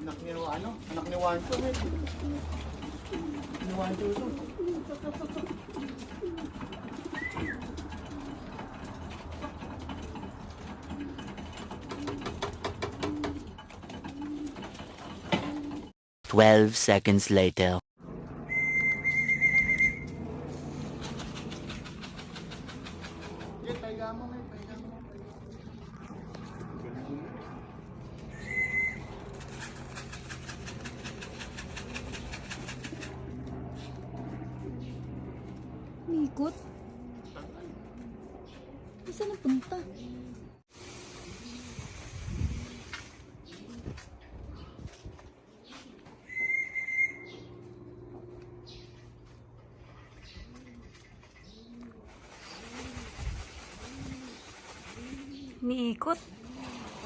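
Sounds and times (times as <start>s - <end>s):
pigeons cooing: 0.7s - 15.9s, 20.6s - 23.8s, 24.9s - 35.7s, 36.4s - 57.0s
rapid soft fluttering patter: 52.0s - 55.6s.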